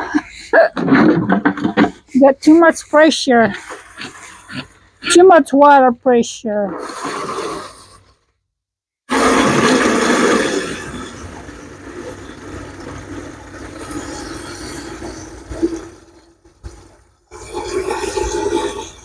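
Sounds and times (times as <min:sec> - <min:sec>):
hose water gushing into watering can: 0:06.7 - 0:08.1, 0:09.1 - 0:19.0.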